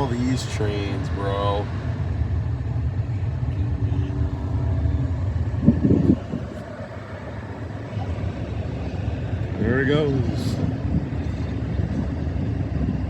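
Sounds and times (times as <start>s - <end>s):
car interior rumble: 0.0s - 13.0s.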